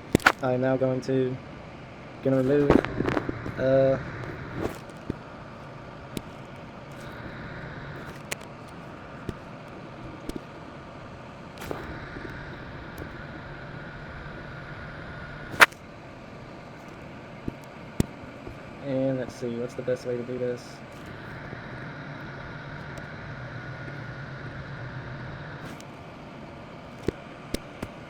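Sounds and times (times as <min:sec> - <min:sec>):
sharp click: 0:15.6 - 0:15.8.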